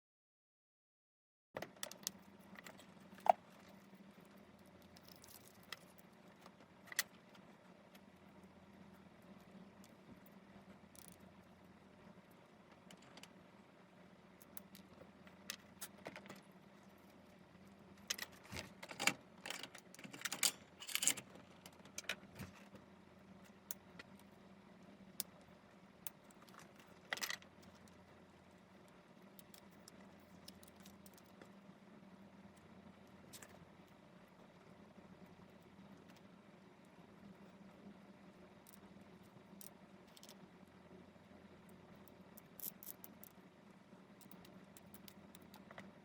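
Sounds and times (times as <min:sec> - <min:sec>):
faint steady hum: 0:01.6 - 0:46.0
small hard objects clicking: 0:42.4 - 0:43.4.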